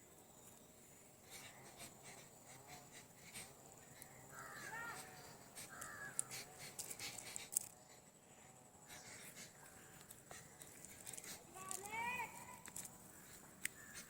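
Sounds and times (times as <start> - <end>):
bird harsh calls: 13.1 - 14.0.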